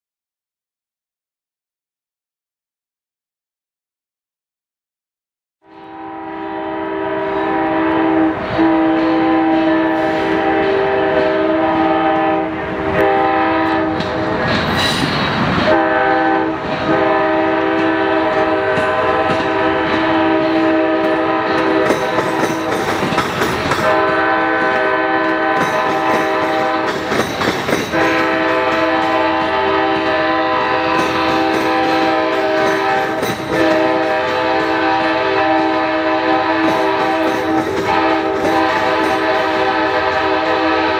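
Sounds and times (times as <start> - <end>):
locomotive air horn chords: 5.6 - 14.1, 15.6 - 22.8, 23.8 - 26.9, 27.9 - 40.9
passing train rushing noise: 5.7 - 40.9.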